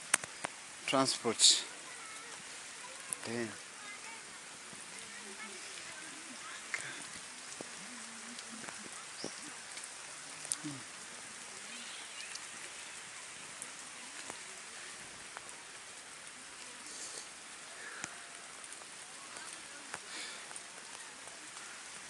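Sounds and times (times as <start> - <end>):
steady rain falling: 0.0 - 22.0
sharp drip ticks: 0.1 - 0.6.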